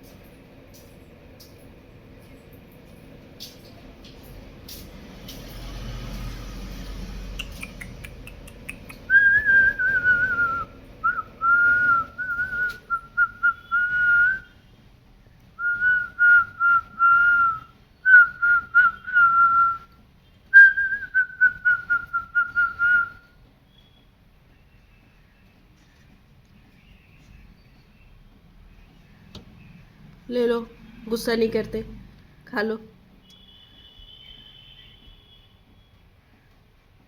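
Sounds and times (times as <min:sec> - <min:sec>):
parrot whistling: 0:07.4 - 0:14.4.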